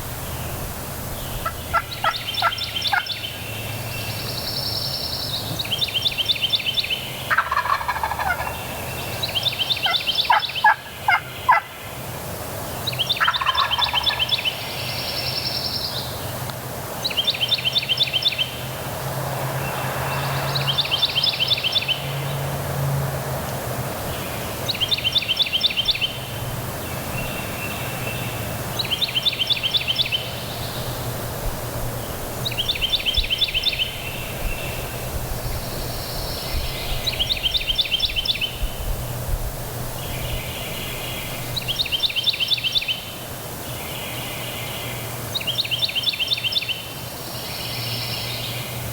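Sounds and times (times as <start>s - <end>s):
wild turkey gobbling: 1.4s - 3.2s, 7.3s - 8.7s, 9.5s - 11.8s, 13.2s - 14.6s
wind noise: 31.0s - 41.6s.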